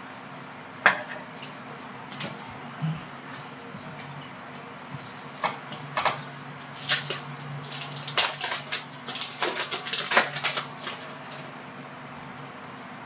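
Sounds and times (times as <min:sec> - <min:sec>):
trading cards flicked and rustled: 0:06.6 - 0:11.5.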